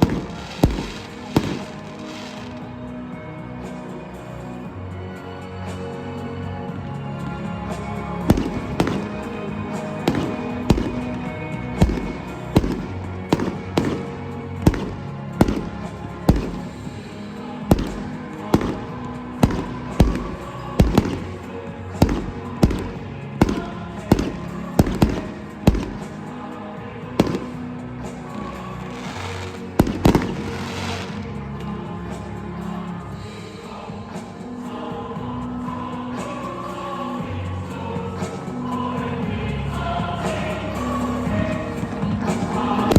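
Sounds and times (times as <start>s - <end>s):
fireworks banging: 0.0s - 2.7s, 8.3s - 26.3s, 27.2s - 27.7s, 28.3s - 31.3s
loud music: 0.0s - 35.6s.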